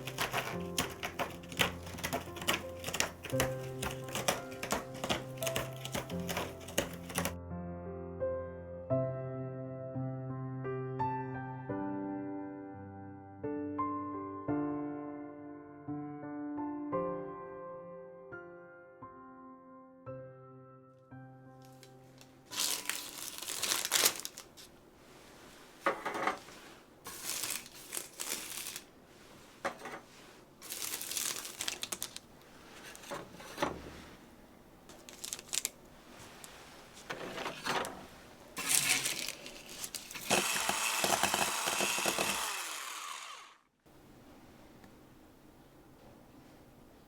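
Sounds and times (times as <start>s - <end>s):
rustling and crinkling handling: 0.0s - 7.4s, 21.7s - 40.4s.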